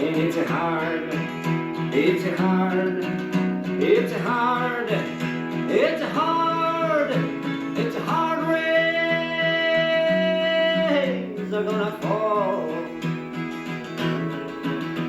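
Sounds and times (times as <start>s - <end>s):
strummed acoustic guitar: 0.0s - 15.0s
person singing long notes: 3.8s - 13.1s.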